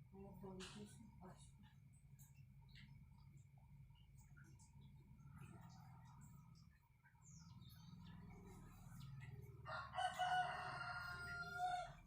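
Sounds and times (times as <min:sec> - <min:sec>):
rooster crowing: 0:09.6 - 0:12.0.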